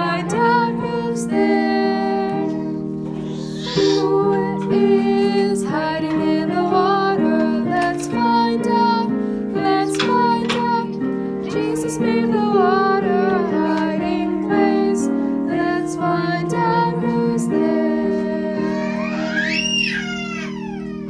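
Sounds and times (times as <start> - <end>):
children's song music: 0.0 - 21.0.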